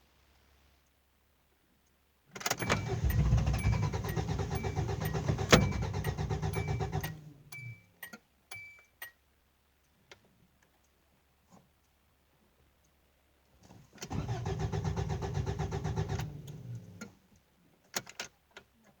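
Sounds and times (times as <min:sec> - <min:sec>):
engine starter cranking: 0:02.5 - 0:07.8, 0:14.1 - 0:17.1
clicks: 0:02.5 - 0:09.1.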